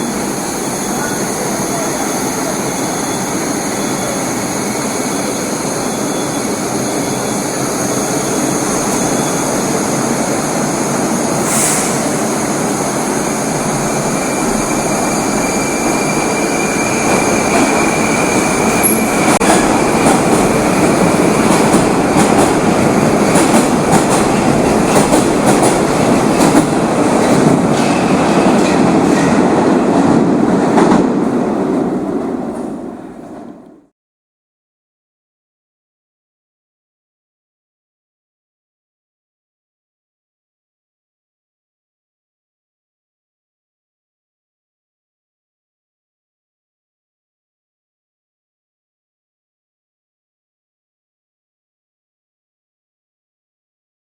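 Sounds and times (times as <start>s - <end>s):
train rumbling in tunnel: 0.0s - 33.9s.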